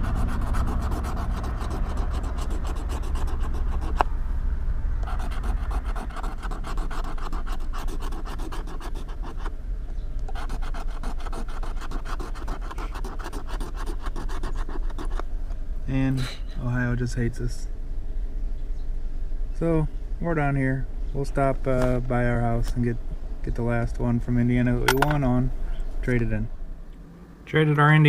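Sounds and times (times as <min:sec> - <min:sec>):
scratching lottery ticket: 0:00.0 - 0:04.0, 0:05.0 - 0:09.5, 0:10.3 - 0:15.3
steady low rumble: 0:00.0 - 0:28.0.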